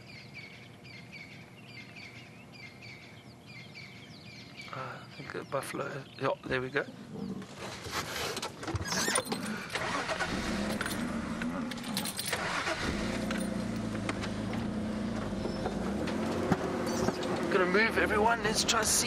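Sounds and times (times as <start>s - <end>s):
engine low hum: 0.0s - 19.0s
vehicle rattling and knocking: 8.5s - 19.0s.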